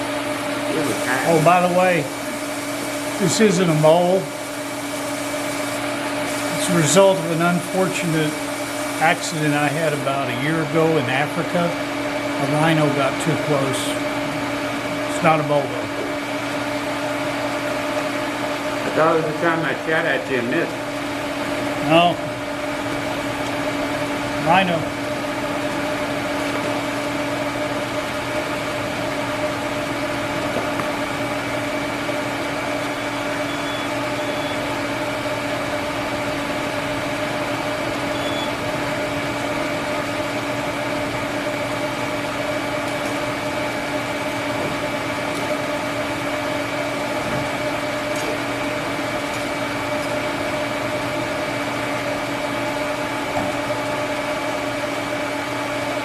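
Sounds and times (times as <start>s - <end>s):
welding arc hissing: 0.0s - 11.0s.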